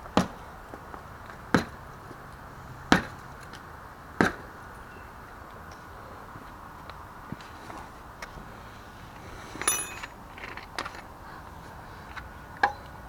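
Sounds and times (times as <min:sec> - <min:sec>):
motorcycle wheel being kicked: 0:09.6 - 0:10.2.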